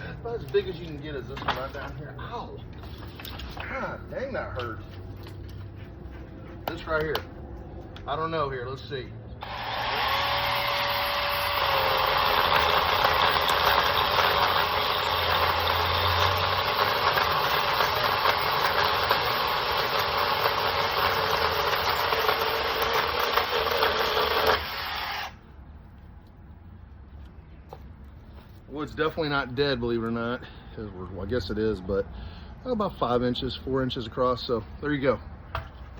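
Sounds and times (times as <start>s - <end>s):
chainsaw cutting through branch: 9.4s - 25.4s.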